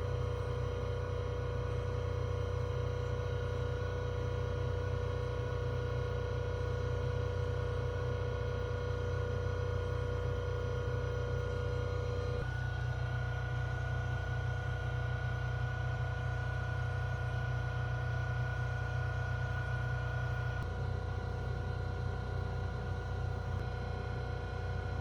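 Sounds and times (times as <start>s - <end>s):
low machine hum: 0.0s - 25.0s.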